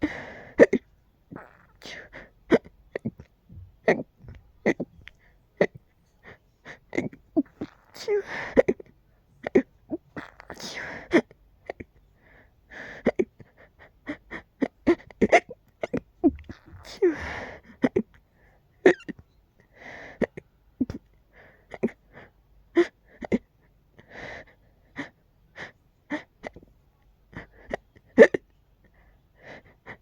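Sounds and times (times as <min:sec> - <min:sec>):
person hiccuping: 0:02.5 - 0:05.0, 0:09.4 - 0:11.9, 0:14.9 - 0:17.2, 0:18.9 - 0:19.2, 0:27.7 - 0:28.4.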